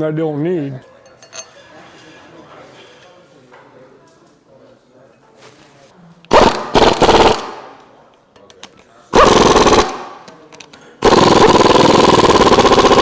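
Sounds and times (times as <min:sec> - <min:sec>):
pneumatic impact wrench hammering: 0:11.0 - 0:13.0.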